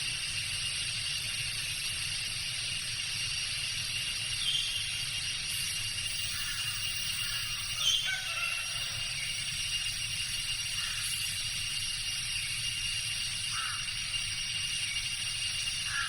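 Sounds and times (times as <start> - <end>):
high-pitched insect drone: 0.0 - 16.0
cock crowing: 7.8 - 9.1.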